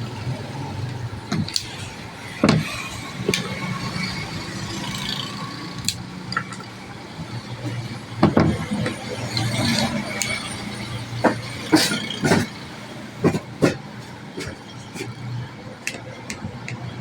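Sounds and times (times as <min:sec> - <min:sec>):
hand tools clicking and knocking: 0:00.9 - 0:01.8, 0:02.4 - 0:04.2, 0:05.8 - 0:06.8, 0:11.1 - 0:12.6, 0:13.2 - 0:15.2, 0:15.8 - 0:16.9.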